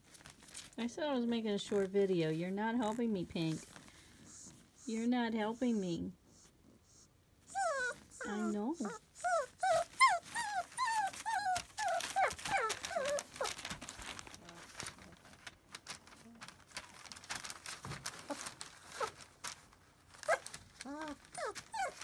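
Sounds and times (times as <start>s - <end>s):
faint rustling: 0.0s - 22.0s
puppy whimpering: 4.2s - 14.8s, 18.2s - 19.2s, 20.2s - 22.0s.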